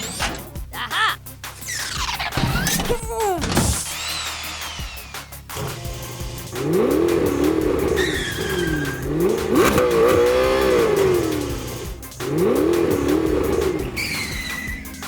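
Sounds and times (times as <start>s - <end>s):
background music: 0.0s - 15.0s
car engine revving: 3.8s - 15.0s
tyres squealing: 6.4s - 15.0s.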